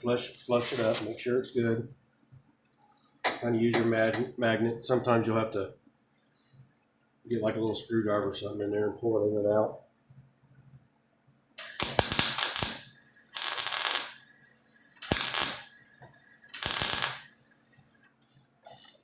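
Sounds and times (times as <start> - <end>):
welding bursts: 11.6 - 19.0.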